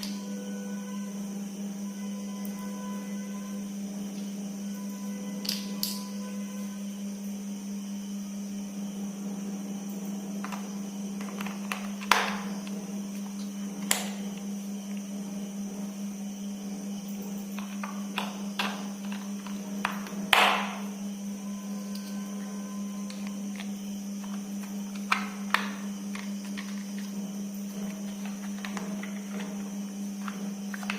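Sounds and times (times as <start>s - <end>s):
small electric motor humming: 0.0s - 30.9s.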